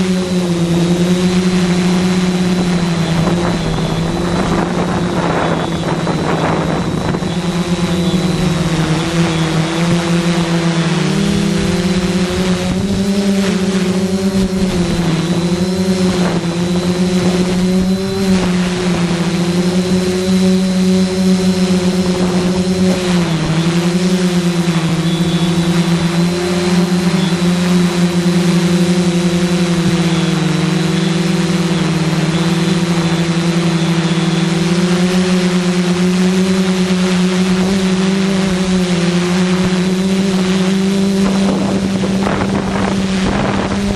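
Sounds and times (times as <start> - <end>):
drone propellers humming: 0.0 - 43.9
wind noise hiss: 1.9 - 10.5, 37.5 - 43.9.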